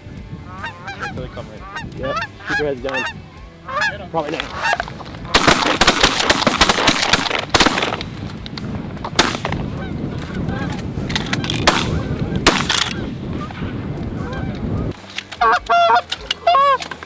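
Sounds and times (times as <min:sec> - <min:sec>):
geese honking: 0:00.0 - 0:17.0
shotgun shots: 0:04.3 - 0:09.8, 0:10.8 - 0:13.2.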